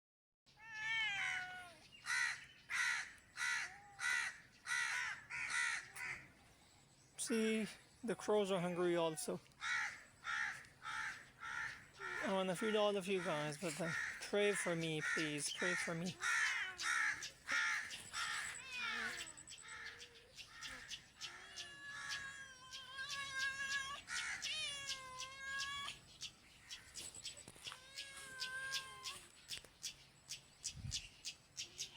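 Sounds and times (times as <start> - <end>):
crows cawing: 0.8 - 6.3, 8.6 - 26.0.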